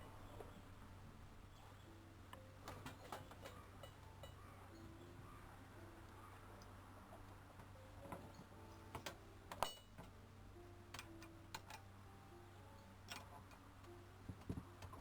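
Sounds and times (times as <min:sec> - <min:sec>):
faint steady hum: 0:00.0 - 0:15.0
clicks and taps of metal parts: 0:08.0 - 0:10.2, 0:10.9 - 0:11.8.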